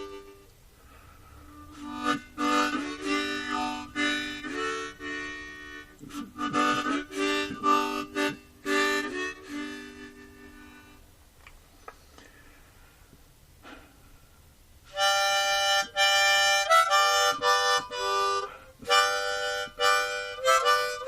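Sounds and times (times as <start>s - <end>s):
reedy chords music: 0.0s - 11.0s.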